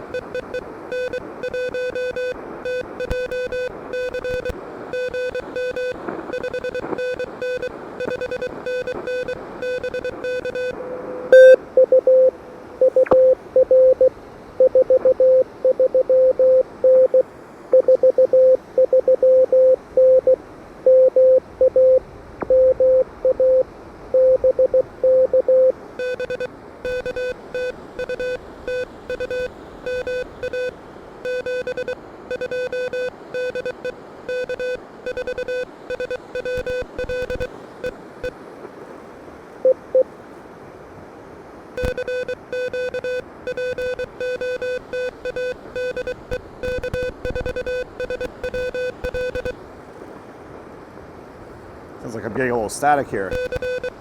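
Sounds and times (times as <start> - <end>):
morse code tones: 0.0 - 38.0, 39.6 - 40.0, 41.8 - 49.6, 53.2 - 54.0
radio band hiss: 52.0 - 54.0.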